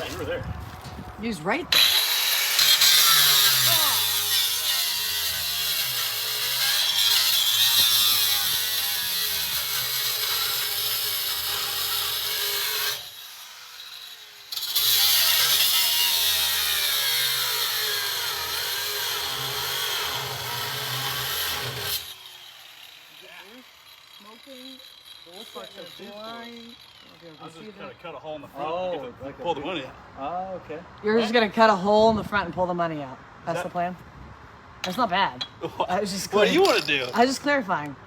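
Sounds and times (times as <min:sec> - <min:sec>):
power saw cutting metal: 0:01.7 - 0:28.0, 0:36.3 - 0:37.4.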